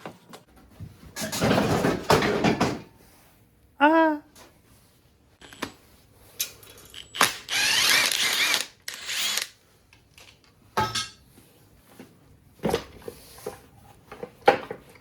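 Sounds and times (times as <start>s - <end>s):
power drill whining: 7.2s - 9.6s.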